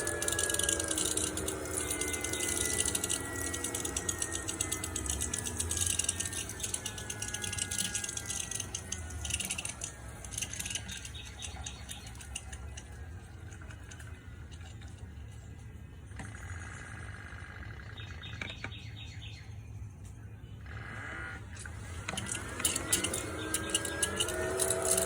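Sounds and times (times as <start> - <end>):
low pump hum: 0.0 - 16.2.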